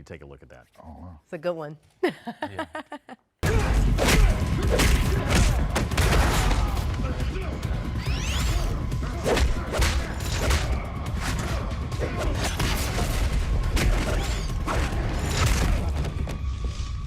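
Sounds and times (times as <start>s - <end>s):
hard hits and booms: 3.4s - 7.4s.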